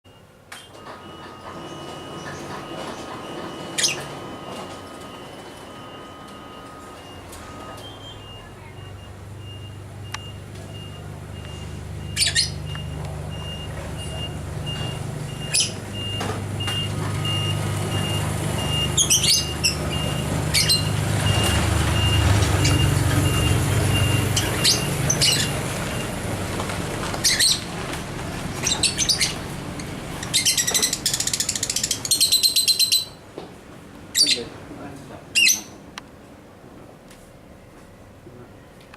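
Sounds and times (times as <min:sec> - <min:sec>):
low engine rumble: 0:01.5 - 0:35.3
fast high beeps: 0:01.9 - 0:26.2
bird chirps and squawks: 0:12.1 - 0:12.7, 0:19.0 - 0:19.8, 0:20.5 - 0:20.9, 0:28.6 - 0:29.4, 0:30.2 - 0:33.2, 0:35.4 - 0:35.8.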